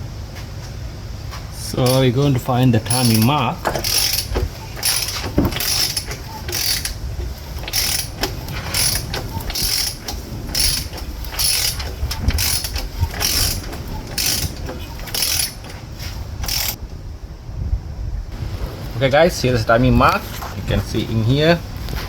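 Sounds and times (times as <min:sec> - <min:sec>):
socket ratchet clicking: 0:01.8 - 0:16.8.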